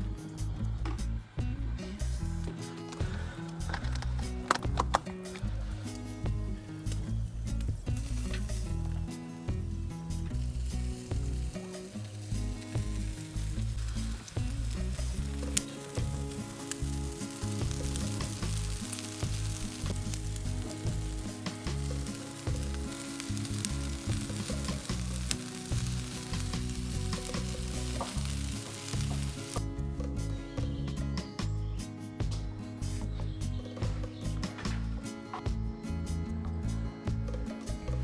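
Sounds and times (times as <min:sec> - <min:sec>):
food sizzling in a pan: 0:05.9 - 0:29.6.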